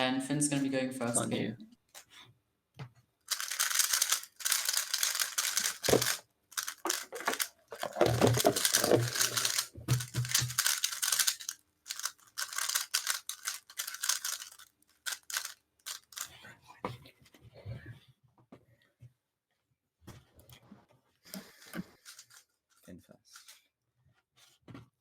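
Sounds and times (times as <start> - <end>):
plastic puzzle cube clicking: 3.3 - 16.3.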